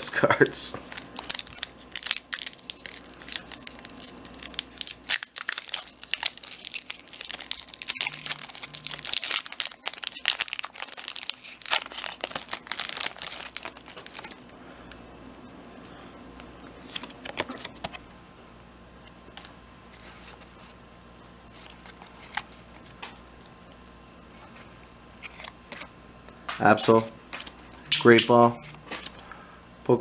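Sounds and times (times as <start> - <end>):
foil wrapper crinkling and tearing: 0.8 - 14.5.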